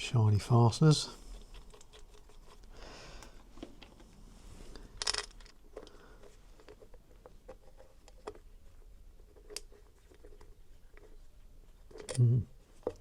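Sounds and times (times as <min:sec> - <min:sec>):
small parts clicking and tapping: 0:11.9 - 0:13.0.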